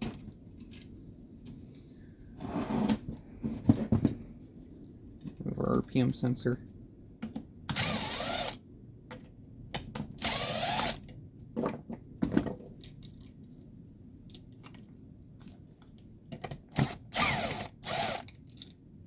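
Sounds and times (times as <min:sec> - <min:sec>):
power drill spinning: 0:07.7 - 0:08.6, 0:10.2 - 0:11.0, 0:16.7 - 0:18.3.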